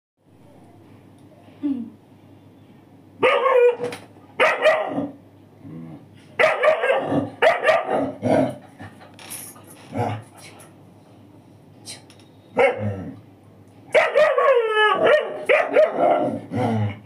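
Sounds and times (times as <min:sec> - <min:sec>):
dog barking: 0:03.2 - 0:05.2, 0:06.4 - 0:08.2, 0:12.6 - 0:12.8, 0:13.9 - 0:16.4.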